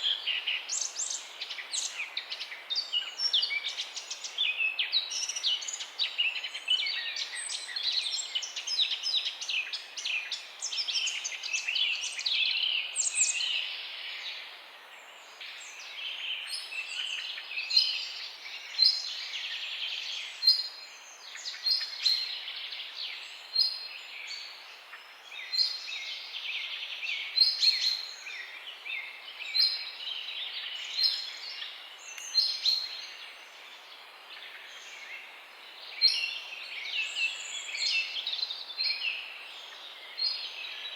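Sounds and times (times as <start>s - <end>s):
faint background hiss: 0.0s - 40.9s
songbirds chirping and trilling: 0.0s - 40.9s.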